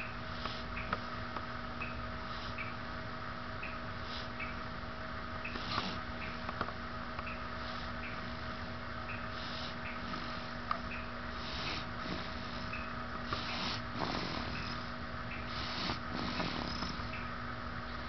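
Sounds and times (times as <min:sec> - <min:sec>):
background hum: 0:00.0 - 0:18.0
person snoring: 0:11.4 - 0:14.9, 0:15.5 - 0:17.1.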